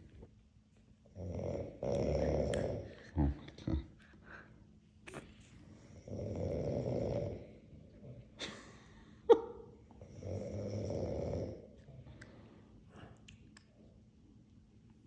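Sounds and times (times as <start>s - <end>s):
woman snoring heavily: 1.2s - 2.8s, 6.0s - 7.5s, 10.0s - 11.6s.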